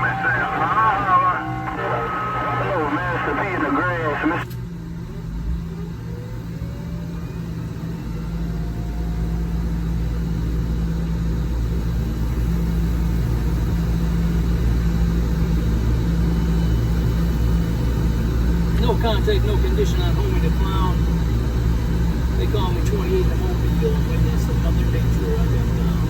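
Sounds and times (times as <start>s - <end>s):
radio static hiss: 0.0s - 4.5s
steady low hum: 0.0s - 26.0s.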